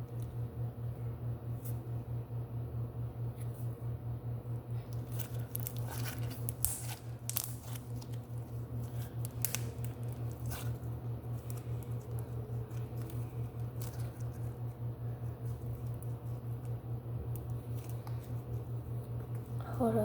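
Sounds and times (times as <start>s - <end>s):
slime squishing: 4.8s - 19.6s.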